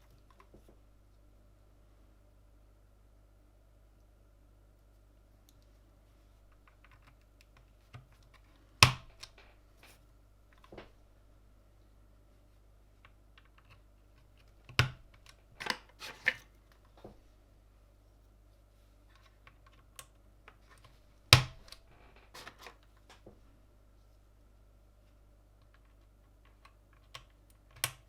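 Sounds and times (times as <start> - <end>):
keyboard parts clicking and snapping: 6.5 - 9.5, 13.0 - 16.5, 25.6 - 28.0.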